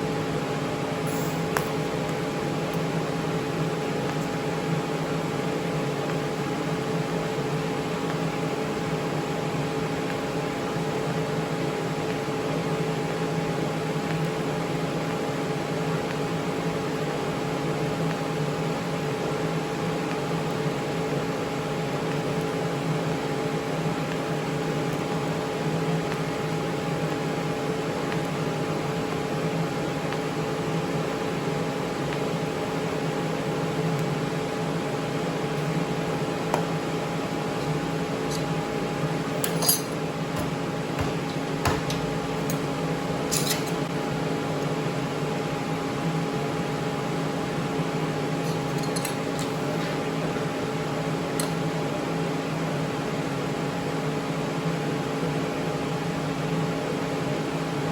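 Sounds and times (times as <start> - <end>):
welding machine humming: 0.0 - 45.3.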